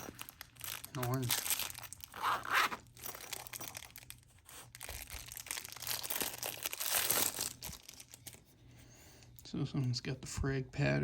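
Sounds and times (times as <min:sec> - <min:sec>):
packaging crinkling and rustling: 0:00.0 - 0:08.4.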